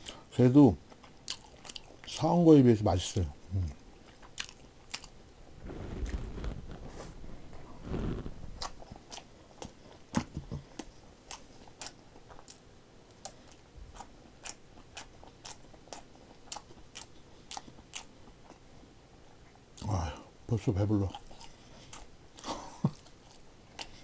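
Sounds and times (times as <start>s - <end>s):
person chewing: 0.9s - 2.1s, 3.6s - 5.2s, 10.7s - 18.6s, 21.1s - 24.0s.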